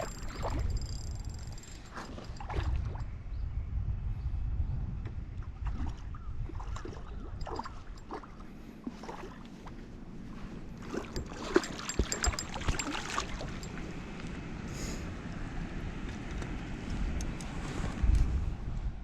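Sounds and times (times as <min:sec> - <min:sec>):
water splashing and sloshing: 0:00.0 - 0:03.2, 0:05.3 - 0:14.4.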